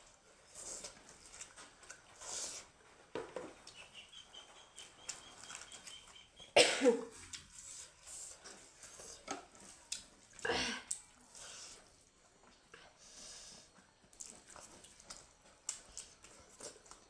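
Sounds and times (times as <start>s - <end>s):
person coughing loudly: 6.6s - 7.1s.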